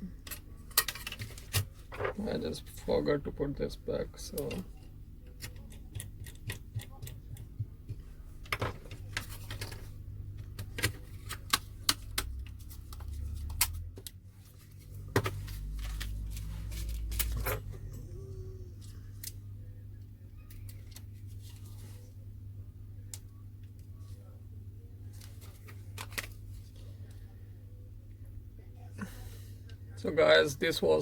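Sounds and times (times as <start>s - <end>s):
small parts clicking and tapping: 5.3s - 8.7s.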